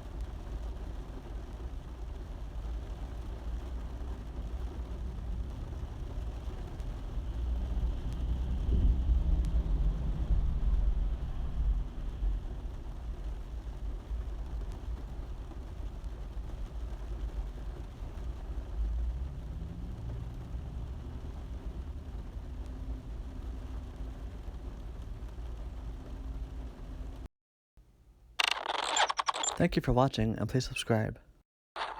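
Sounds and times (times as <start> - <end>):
rain on a car roof: 0.0 - 27.3
low rumble: 4.5 - 15.0.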